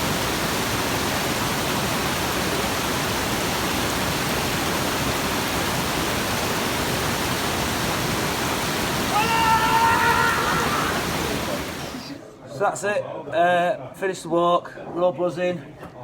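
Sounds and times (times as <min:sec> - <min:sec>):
waterfall rushing: 0:00.0 - 0:12.2.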